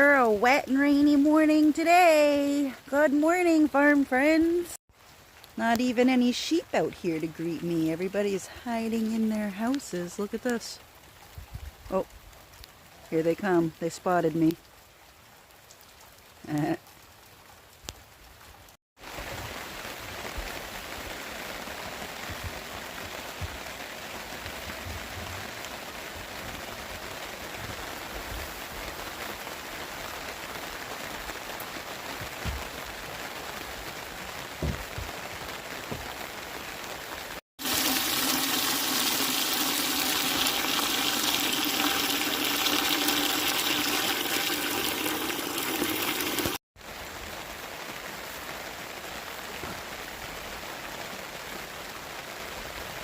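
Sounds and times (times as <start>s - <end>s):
rain falling: 0.0s - 53.0s
rush of water: 19.0s - 53.0s.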